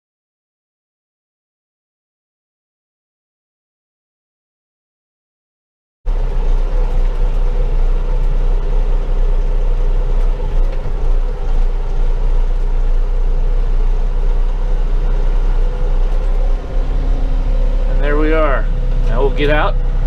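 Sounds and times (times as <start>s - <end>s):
diesel tractor engine running: 6.1s - 20.0s.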